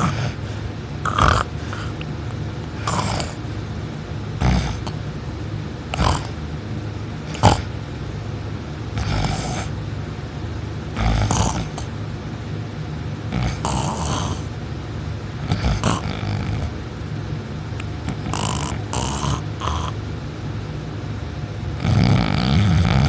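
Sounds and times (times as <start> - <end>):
person snoring loudly: 0.0 - 2.0, 2.8 - 3.5, 4.4 - 5.0, 5.9 - 6.4, 7.3 - 7.7, 9.0 - 9.7, 11.0 - 11.9, 13.3 - 14.5, 15.4 - 16.7, 18.1 - 20.0, 21.8 - 23.0
steady low hum: 0.0 - 23.0.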